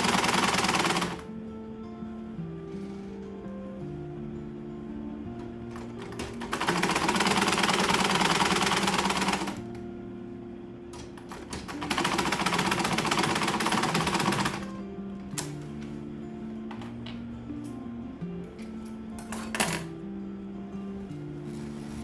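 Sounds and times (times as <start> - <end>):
electric sewing machine stitching: 0.0 - 1.4, 5.4 - 9.9, 11.2 - 15.8
background music: 0.0 - 22.0.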